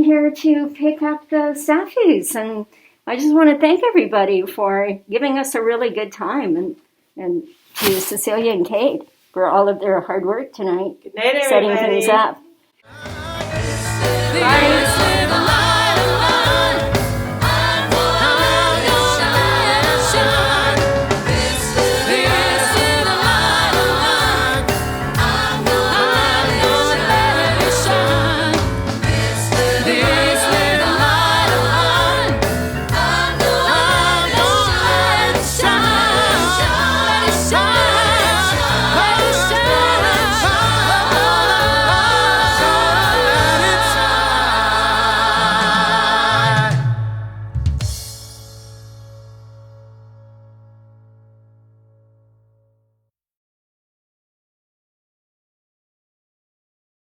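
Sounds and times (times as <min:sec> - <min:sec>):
choir singing over a band: 0:12.9 - 0:47.4.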